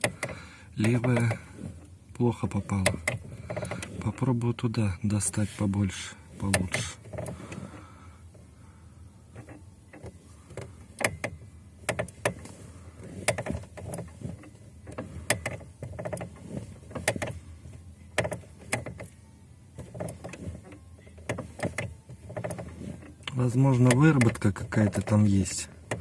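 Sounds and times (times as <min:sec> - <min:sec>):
clutch pedal clicking and knocking: 0:00.0 - 0:07.8, 0:09.3 - 0:19.2, 0:19.8 - 0:26.0.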